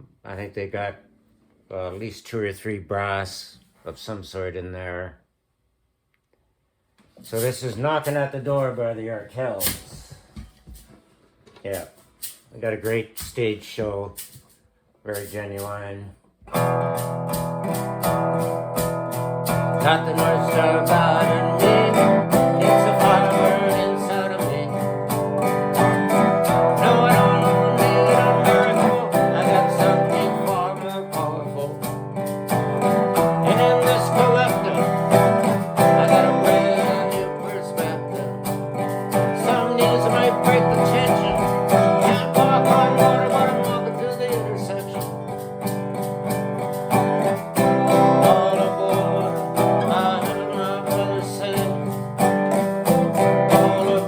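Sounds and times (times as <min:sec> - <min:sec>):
strummed acoustic guitar: 0:07.2 - 0:54.0
person singing: 0:19.7 - 0:25.4, 0:26.0 - 0:32.0, 0:32.7 - 0:38.5, 0:39.2 - 0:45.4, 0:47.6 - 0:52.1, 0:52.8 - 0:54.0.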